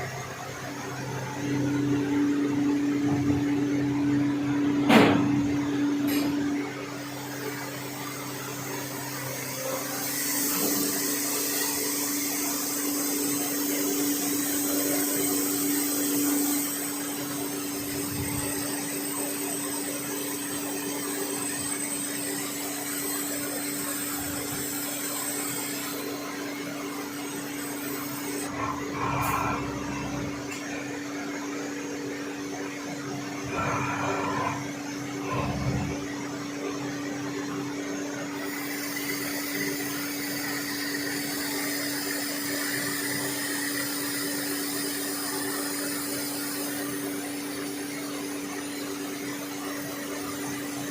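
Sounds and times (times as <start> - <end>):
motor hum: 0.0 - 37.8.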